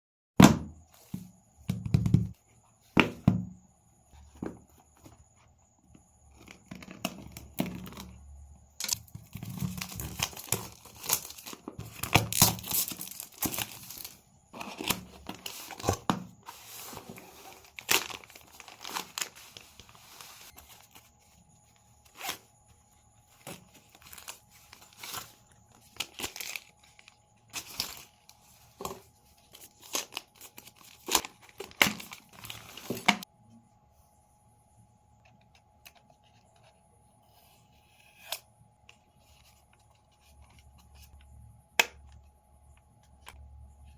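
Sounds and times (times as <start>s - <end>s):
packaging being torn and crinkled: 8.8s - 14.1s, 17.6s - 19.9s, 23.9s - 28.1s.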